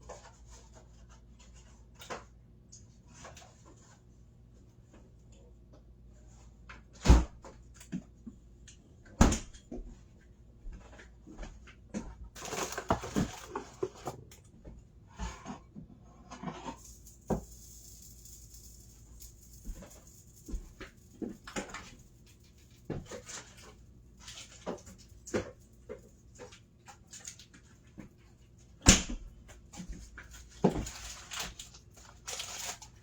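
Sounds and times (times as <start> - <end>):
kitchen clatter and rustling: 11.7 - 28.6, 29.4 - 33.0
steady hiss: 16.8 - 23.2.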